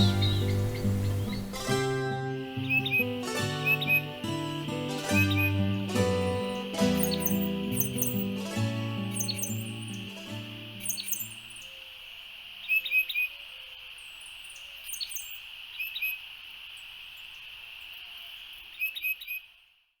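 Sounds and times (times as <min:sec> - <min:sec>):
steady high hiss: 0:00.0 - 0:18.7
songbirds chirping: 0:00.0 - 0:19.8.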